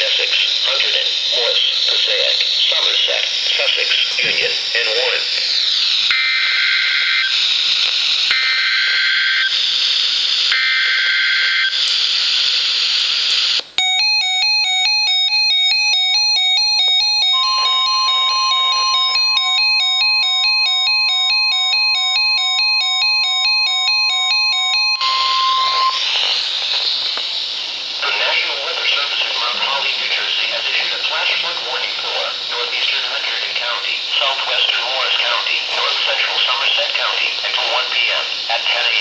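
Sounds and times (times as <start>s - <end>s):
receiver hiss: 0.0s - 13.9s, 16.4s - 21.3s, 24.9s - 39.0s
two-tone electronic data buzz: 0.0s - 28.3s
steady warning alarm tone: 0.0s - 39.0s
electronic chime pattern: 13.8s - 21.5s, 24.3s - 26.1s.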